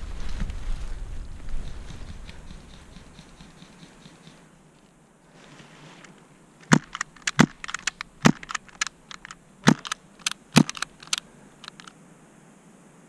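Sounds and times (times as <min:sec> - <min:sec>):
sharp cracks and snaps: 0:06.6 - 0:12.0.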